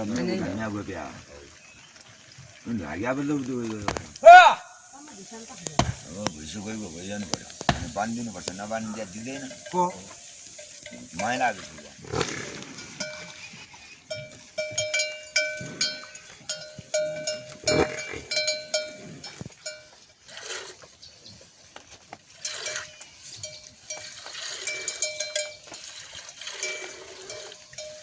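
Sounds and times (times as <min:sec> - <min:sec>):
metal livestock bell clanking: 0:08.6 - 0:12.0, 0:12.8 - 0:13.5, 0:14.1 - 0:20.0, 0:22.4 - 0:28.0.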